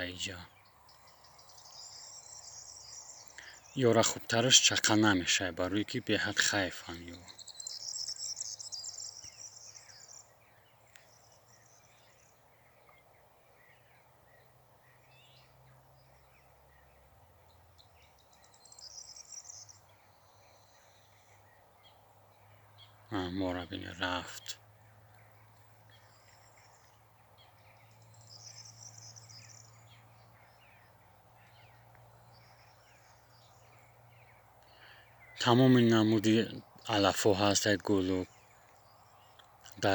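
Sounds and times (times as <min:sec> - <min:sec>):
high bird trill: 0:00.0 - 0:10.4
faint bird chirps: 0:00.0 - 0:39.9.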